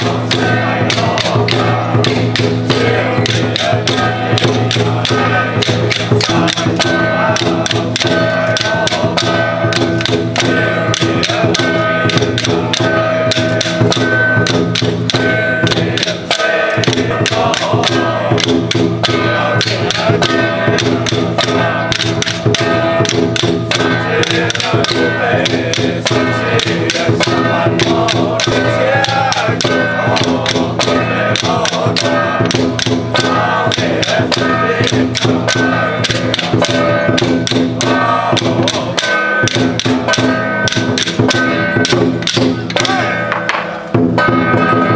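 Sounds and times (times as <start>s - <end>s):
held tones: 0.0s - 44.9s
quick percussion strikes: 0.0s - 44.9s.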